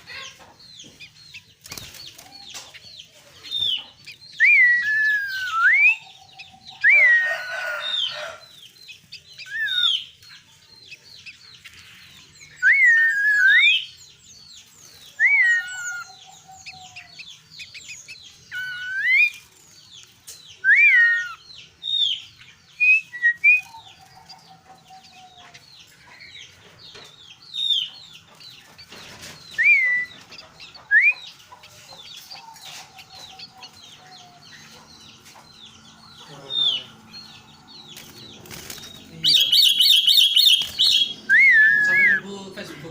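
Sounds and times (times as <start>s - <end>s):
bulbul whistled song: 4.3s - 7.6s, 9.4s - 10.0s, 12.4s - 14.0s, 15.1s - 16.2s, 18.5s - 19.5s, 20.4s - 23.9s, 29.5s - 30.3s, 30.9s - 31.3s, 39.5s - 42.3s.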